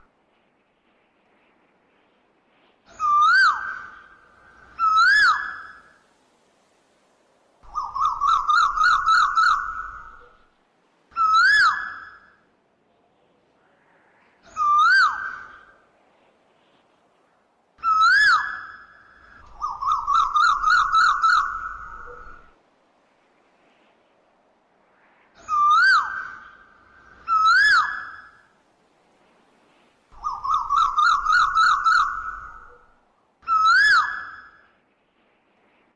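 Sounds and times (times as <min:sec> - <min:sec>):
koel whistled calls: 0:02.9 - 0:06.0, 0:07.7 - 0:10.4, 0:11.1 - 0:12.4, 0:14.4 - 0:15.8, 0:17.8 - 0:22.6, 0:25.4 - 0:28.5, 0:30.2 - 0:34.7.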